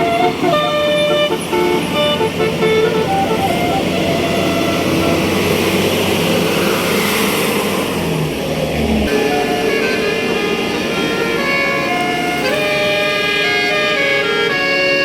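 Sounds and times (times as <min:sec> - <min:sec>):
bus horn melody: 0:00.0 - 0:06.4, 0:09.1 - 0:15.0
road noise: 0:00.0 - 0:15.0.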